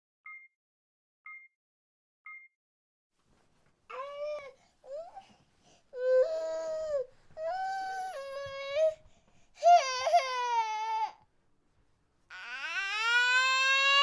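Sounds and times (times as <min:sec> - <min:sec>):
baby crying: 0:06.0 - 0:09.0, 0:09.6 - 0:11.2, 0:12.3 - 0:14.0.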